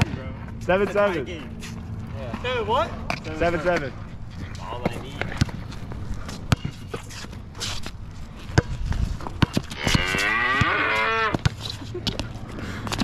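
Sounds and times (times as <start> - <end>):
basketball bouncing: 6.5 - 7.0, 8.5 - 12.2.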